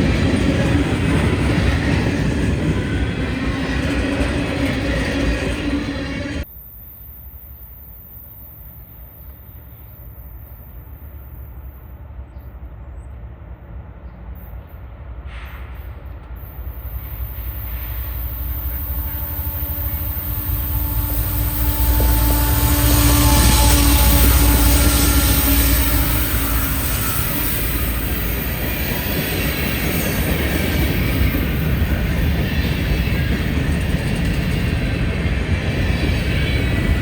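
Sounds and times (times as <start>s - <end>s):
train rumble: 0.0s - 6.5s, 7.7s - 37.0s
steady engine tone: 17.2s - 28.5s.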